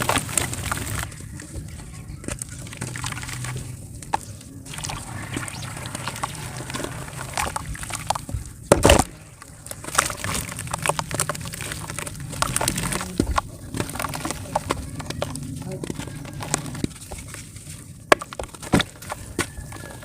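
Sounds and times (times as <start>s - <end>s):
clay crackling in water: 0.0s - 20.0s
splash: 4.7s - 13.0s.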